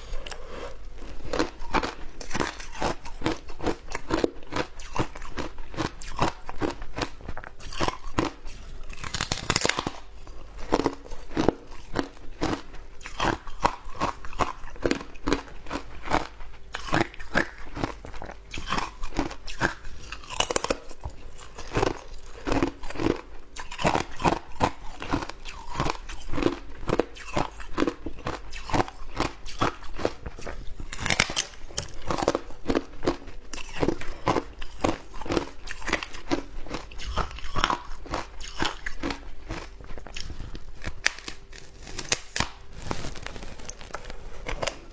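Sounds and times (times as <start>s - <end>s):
chewing crunchy ice: 0.0s - 44.9s.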